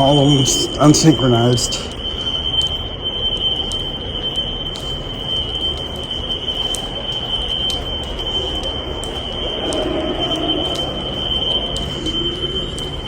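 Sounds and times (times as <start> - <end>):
fire alarm high-pitched tone: 0.0 - 13.0
faint clicks: 0.4 - 13.0
low rumble: 9.0 - 13.0.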